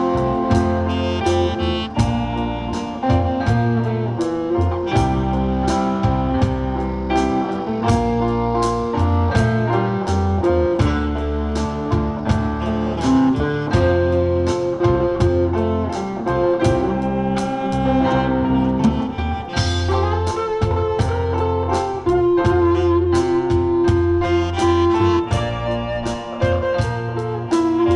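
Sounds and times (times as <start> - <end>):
bass: 0.0 - 27.9
drums keeping a beat: 0.0 - 27.9
guitar: 0.0 - 27.9
keyboard: 0.0 - 27.9
saxophone: 0.0 - 27.9.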